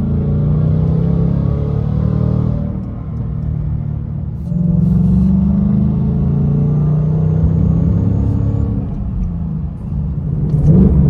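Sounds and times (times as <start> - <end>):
supercharged engine running: 7.2 - 11.0.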